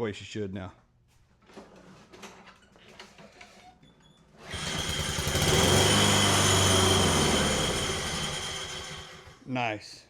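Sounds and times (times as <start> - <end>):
lawn mower engine starting: 4.4 - 9.4.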